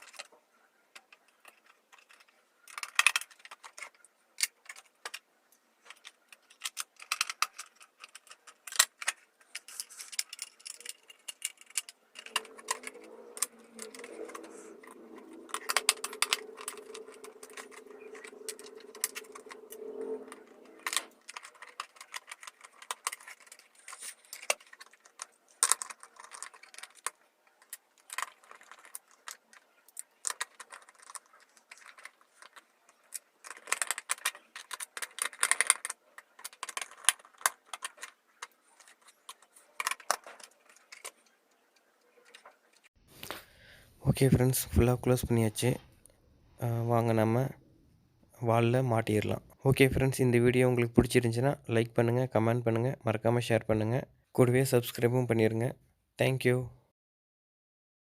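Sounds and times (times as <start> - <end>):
plastic clock parts clicking: 0.0 - 42.9.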